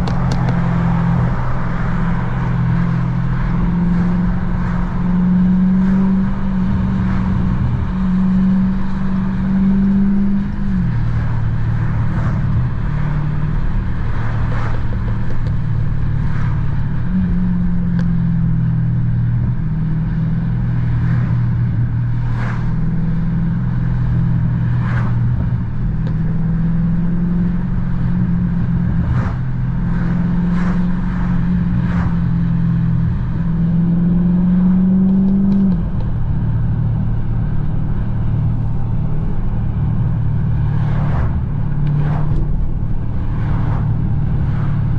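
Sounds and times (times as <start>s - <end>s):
exhaust popping: 0.0s - 3.7s
car engine revving through gears: 0.0s - 44.9s.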